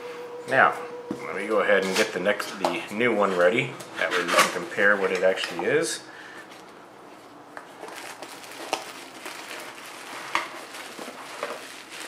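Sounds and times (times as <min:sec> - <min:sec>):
packaging rustling: 0:07.2 - 0:12.0.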